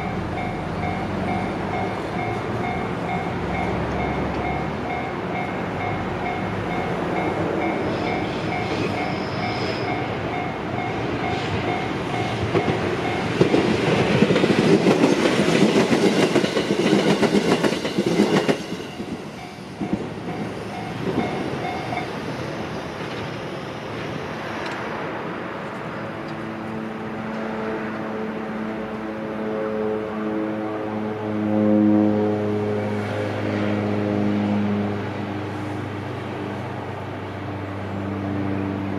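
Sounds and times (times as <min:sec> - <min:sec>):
train wheels clattering: 0:07.6 - 0:22.2.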